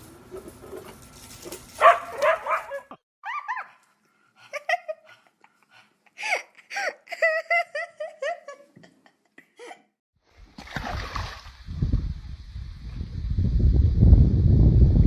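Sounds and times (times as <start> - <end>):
dog barking: 1.8 - 3.7
dog yipping: 1.8 - 3.8.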